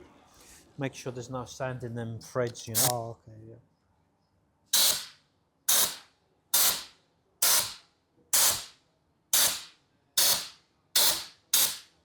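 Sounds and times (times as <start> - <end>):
air blow gun hissing blasts: 4.7 - 6.0, 6.6 - 7.8, 8.4 - 8.7, 9.4 - 11.8.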